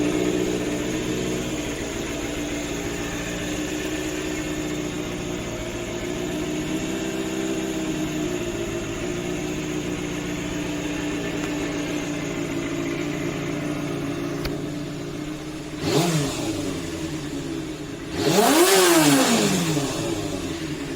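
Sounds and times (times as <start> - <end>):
motorcycle engine idling: 0.0 - 20.9
engine throttle blip: 8.3 - 20.9.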